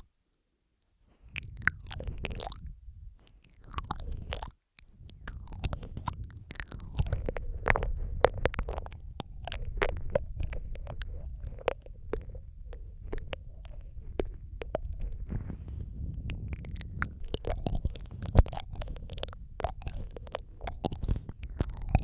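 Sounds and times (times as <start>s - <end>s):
wet mouth clicks and smacks: 1.1s - 22.0s
low rumble: 5.0s - 22.0s.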